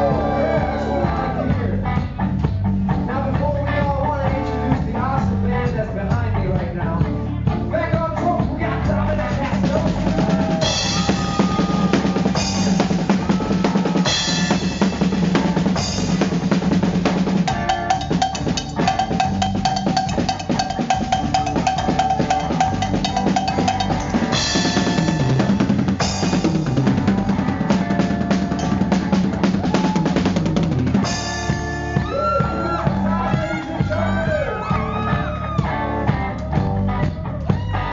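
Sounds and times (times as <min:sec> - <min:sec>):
bass guitar: 0:00.0 - 0:37.9
drum kit playing: 0:00.0 - 0:37.9
sustained guitar notes: 0:09.9 - 0:32.1.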